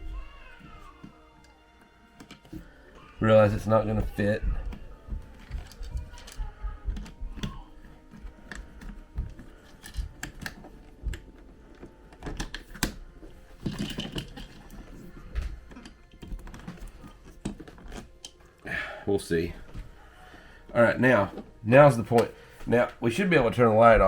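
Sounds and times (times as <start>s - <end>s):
clicks taps and scrapes of wiring: 4.6s - 13.0s, 13.6s - 18.5s.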